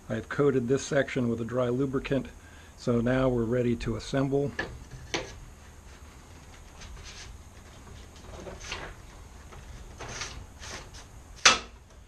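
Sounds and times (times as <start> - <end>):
sharp knock of mast sections: 11.4 - 11.8.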